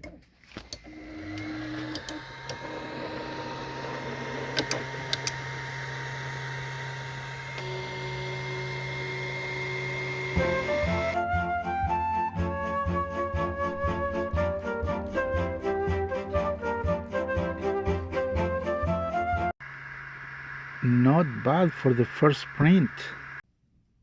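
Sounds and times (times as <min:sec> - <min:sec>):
stepper motors humming and whining: 0:00.5 - 0:11.2, 0:19.6 - 0:23.4
sharp clicks: 0:04.6 - 0:05.4
music: 0:10.4 - 0:19.6.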